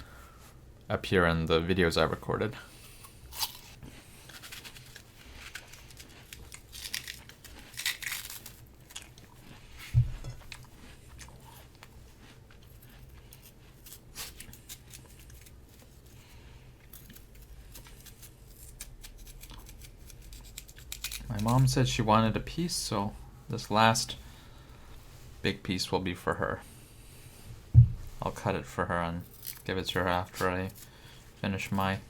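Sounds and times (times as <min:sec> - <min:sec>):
crunching and chewing pear: 0:02.7 - 0:21.8, 0:29.2 - 0:31.9
dull thump: 0:27.7 - 0:28.1.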